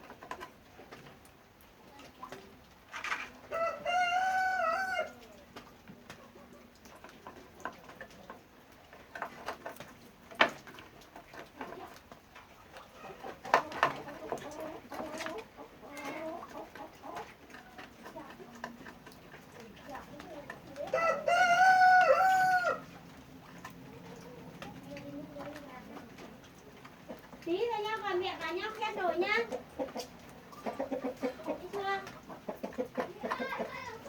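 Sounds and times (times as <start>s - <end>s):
chicken clucks: 1.9s - 34.0s
rooster crowing: 3.5s - 5.2s, 20.9s - 22.9s.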